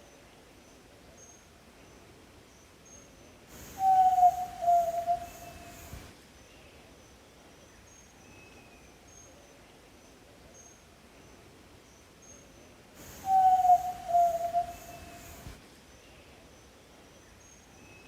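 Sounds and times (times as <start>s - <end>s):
faint high chirps: 2.9s - 6.0s, 13.0s - 15.6s
bird whistled call: 3.6s - 6.0s, 13.1s - 15.5s.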